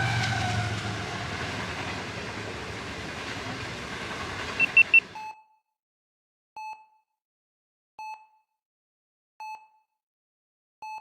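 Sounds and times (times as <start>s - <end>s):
train running: 0.0s - 5.2s.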